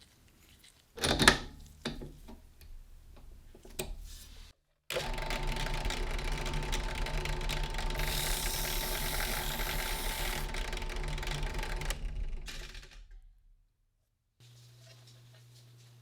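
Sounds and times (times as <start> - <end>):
mechanical clicking and whirring: 4.9 - 13.2.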